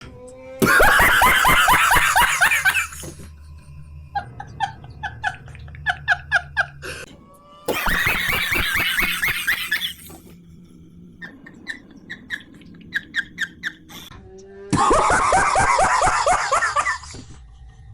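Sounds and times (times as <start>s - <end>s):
man laughing hard: 0.6s - 3.4s, 4.2s - 7.1s, 7.7s - 10.3s, 11.2s - 14.1s, 14.7s - 17.4s
squeaky giggles: 7.7s - 10.3s, 11.2s - 14.1s.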